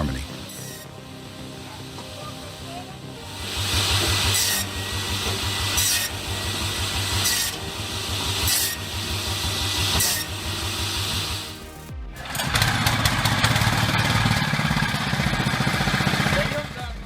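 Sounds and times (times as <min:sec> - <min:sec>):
motor hum: 0:00.0 - 0:17.0
saw rasping through wood: 0:03.3 - 0:11.6.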